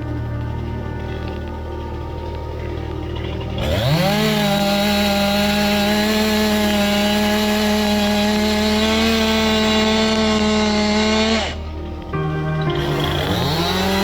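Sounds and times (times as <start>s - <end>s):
chainsaw at full throttle: 3.6s - 11.7s, 12.7s - 14.0s.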